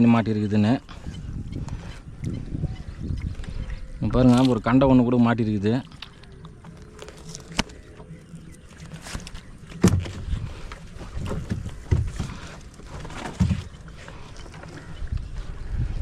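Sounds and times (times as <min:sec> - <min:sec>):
dull knocks against boat: 0:09.7 - 0:10.4, 0:11.2 - 0:12.5.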